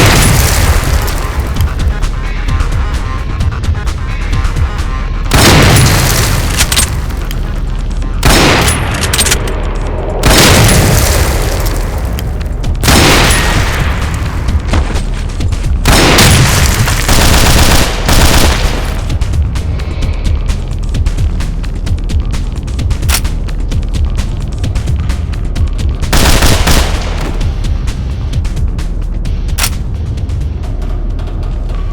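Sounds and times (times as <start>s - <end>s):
heavy booms: 0.0s - 21.3s
steady low drone: 0.0s - 31.9s
gunshot bursts: 5.3s - 7.5s, 8.2s - 9.5s, 10.2s - 15.2s, 15.8s - 19.3s, 26.1s - 27.6s.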